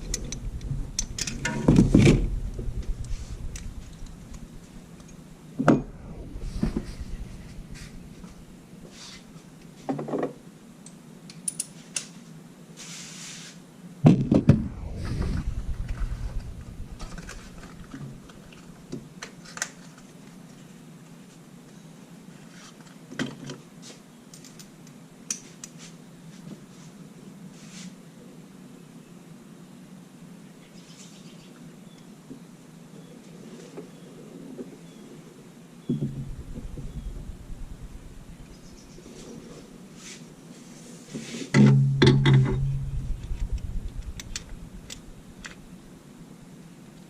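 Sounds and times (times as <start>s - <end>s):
low steady hum: 0.0s - 9.8s, 14.4s - 19.0s, 35.8s - 40.0s, 41.6s - 46.2s.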